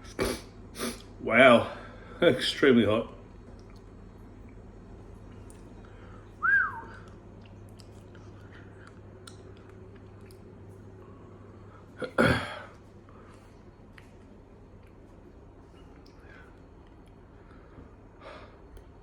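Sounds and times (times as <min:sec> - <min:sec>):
faint chewing: 0:03.4 - 0:18.0
man whistling: 0:06.4 - 0:07.1.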